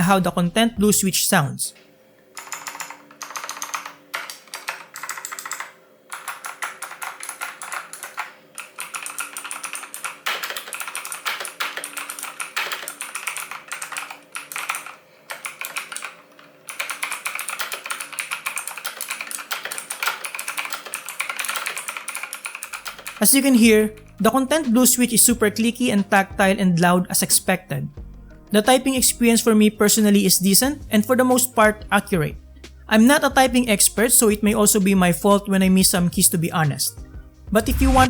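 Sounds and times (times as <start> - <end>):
clicky mechanical keyboard typing: 2.4 - 25.2.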